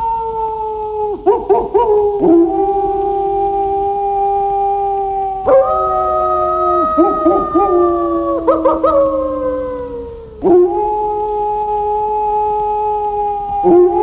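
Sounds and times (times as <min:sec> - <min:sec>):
wolves howling: 0:00.0 - 0:14.0
wolves yipping: 0:01.2 - 0:02.5, 0:05.4 - 0:10.7.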